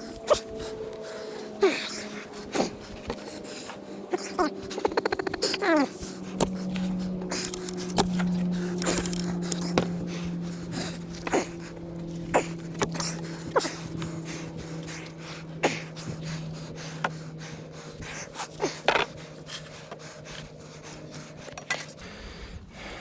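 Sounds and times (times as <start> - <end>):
steady low hum: 0.0 - 23.0
digging tool scraping soil: 5.4 - 16.4.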